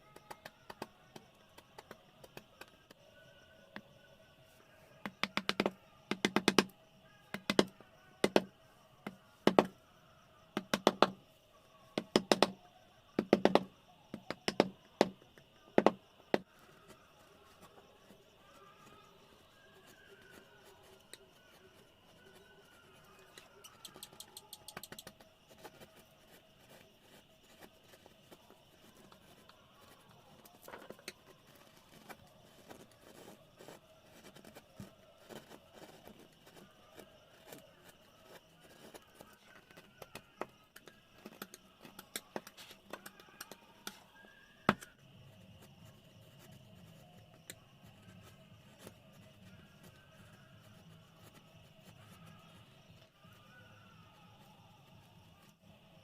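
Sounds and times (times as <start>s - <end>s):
carving tools tapping wood: 0.1s - 2.9s, 5.0s - 9.8s, 10.6s - 11.2s, 12.0s - 12.6s, 13.2s - 16.9s, 18.8s - 44.1s, 44.7s - 45.0s.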